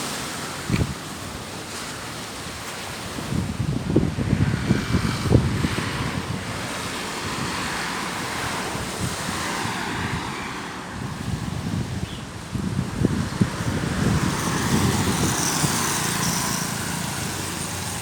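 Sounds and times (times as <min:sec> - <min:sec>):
sea waves washing in: 0:00.0 - 0:18.0
wind buffeting microphone: 0:00.0 - 0:18.0.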